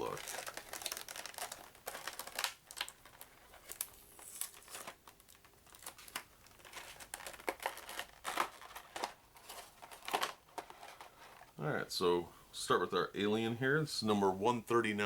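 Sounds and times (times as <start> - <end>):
packaging crinkling: 0.0 - 11.6.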